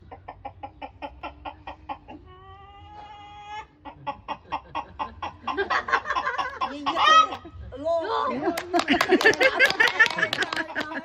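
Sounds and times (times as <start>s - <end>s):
chicken clucking: 0.0s - 7.5s.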